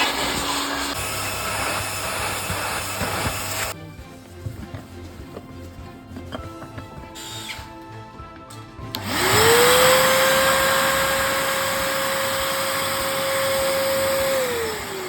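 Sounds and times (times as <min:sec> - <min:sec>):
vacuum cleaner motor whine: 0:00.0 - 0:03.8, 0:08.9 - 0:15.0
vacuum cleaner switch click: 0:09.0 - 0:09.8.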